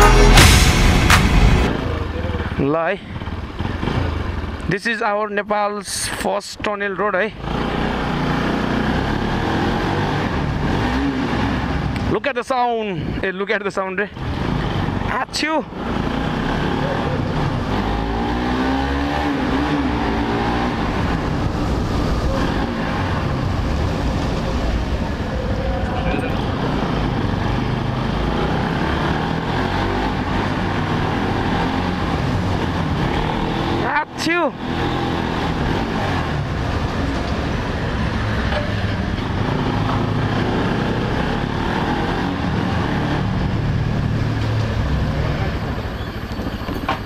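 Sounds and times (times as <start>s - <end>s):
motorcycle engine running: 0.0s - 4.7s, 15.7s - 34.0s
wind and road noise: 0.0s - 47.0s.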